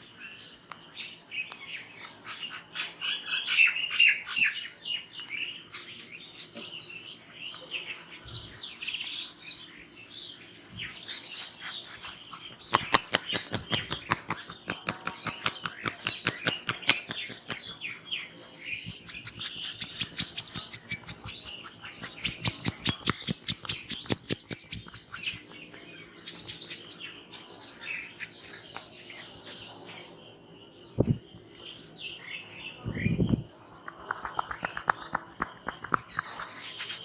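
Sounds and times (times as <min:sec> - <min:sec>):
birds chirping: 0:00.0 - 0:37.0
hands slapping in massage: 0:12.7 - 0:18.0, 0:18.8 - 0:27.0, 0:33.9 - 0:37.0.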